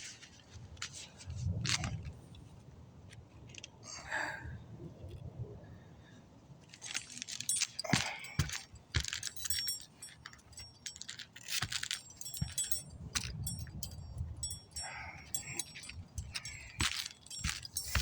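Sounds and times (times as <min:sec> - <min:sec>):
small metal objects jingling: 0:06.7 - 0:18.0.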